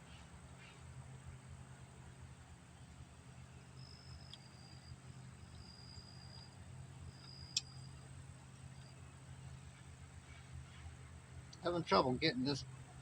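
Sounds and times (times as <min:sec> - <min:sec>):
insect trills: 0:03.4 - 0:10.9
sharp click: 0:07.2 - 0:07.7.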